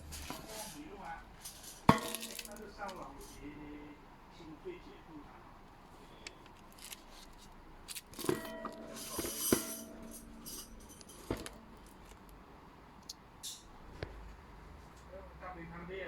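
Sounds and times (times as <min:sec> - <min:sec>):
metal hole saws rattling: 0:00.0 - 0:03.4, 0:07.9 - 0:12.3
ringing metal knocks: 0:01.6 - 0:03.3, 0:08.2 - 0:12.1.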